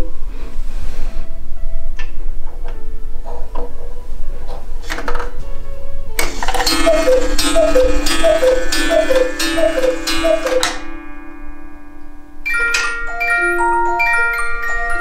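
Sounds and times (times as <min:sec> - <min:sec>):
clock click: 0:06.2 - 0:11.0
cuckoo clock calling: 0:06.2 - 0:15.0
music box plucking tune: 0:06.2 - 0:15.0.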